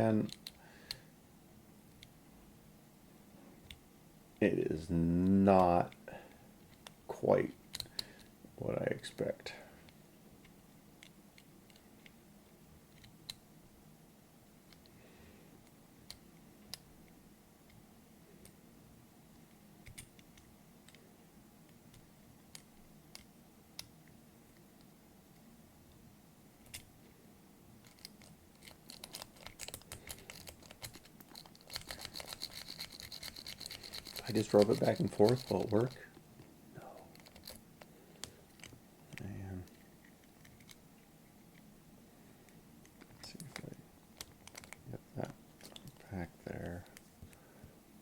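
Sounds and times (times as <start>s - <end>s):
lock picks clicking in lock: 27.8s - 36.0s.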